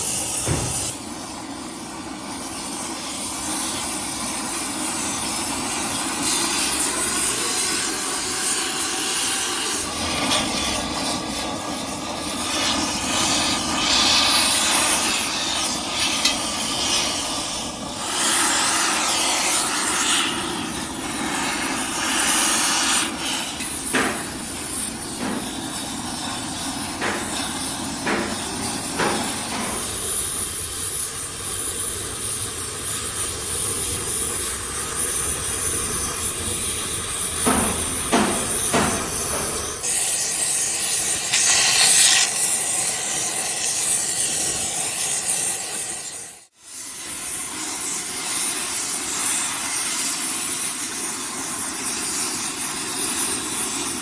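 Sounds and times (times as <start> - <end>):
hissing from metalwork: 0.0 - 54.0
sharp knocks: 0.4 - 1.0, 23.6 - 30.1, 37.4 - 39.8.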